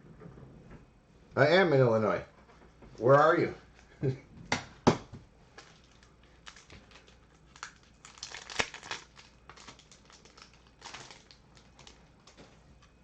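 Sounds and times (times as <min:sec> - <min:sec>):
packaging crinkling and rustling: 0:05.5 - 0:13.0.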